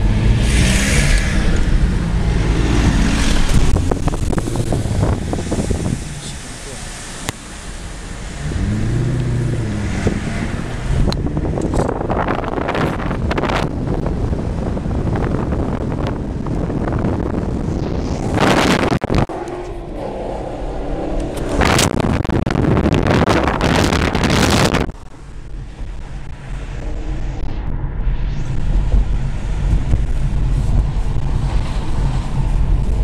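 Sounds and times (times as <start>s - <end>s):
wind noise on microphone: 0.0s - 6.5s, 8.2s - 33.0s
car engine accelerating hard: 0.0s - 14.2s, 15.0s - 25.0s.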